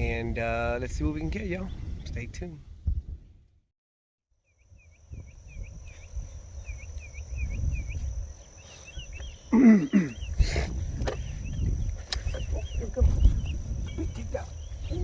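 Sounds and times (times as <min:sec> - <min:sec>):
wind on microphone: 0:00.0 - 0:03.6, 0:04.7 - 0:09.5, 0:10.2 - 0:15.0
birds chirping: 0:04.4 - 0:15.0.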